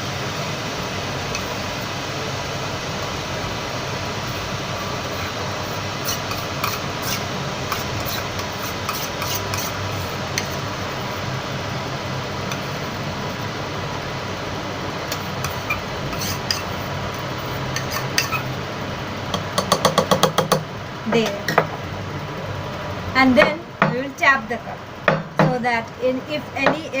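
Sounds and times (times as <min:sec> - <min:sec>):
electric kettle hissing: 0:00.0 - 0:27.0
spoon scraping a mug: 0:05.1 - 0:10.6, 0:15.1 - 0:16.8, 0:17.8 - 0:18.5
mug tapped on counter: 0:19.6 - 0:20.6.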